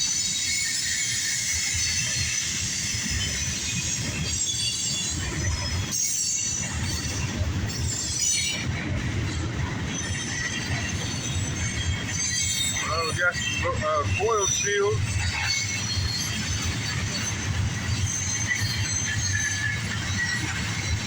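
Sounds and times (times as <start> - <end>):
freight train wheels rumbling on rails: 0.0 - 21.0
high-pitched wheel flange squeal: 10.0 - 21.0.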